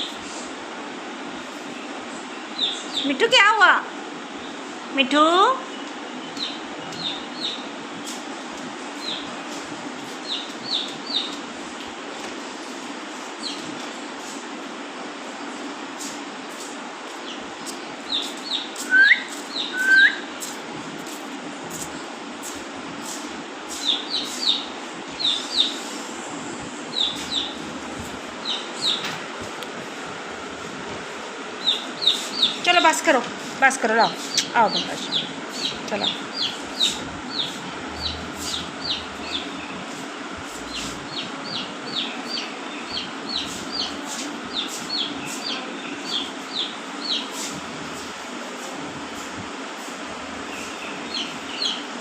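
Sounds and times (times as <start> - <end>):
parrot chirping calls: 18.1 - 20.3, 34.3 - 39.9.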